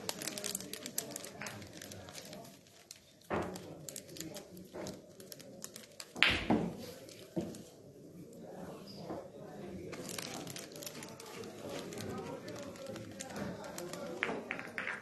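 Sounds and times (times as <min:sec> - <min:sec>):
billiard balls clicking and knocking: 0:05.6 - 0:07.7, 0:12.3 - 0:15.0.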